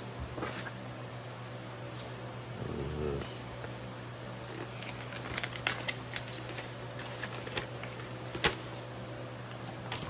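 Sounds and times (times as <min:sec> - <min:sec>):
steady low hum: 0:00.0 - 0:10.0
paper and packaging rustling: 0:03.7 - 0:08.9.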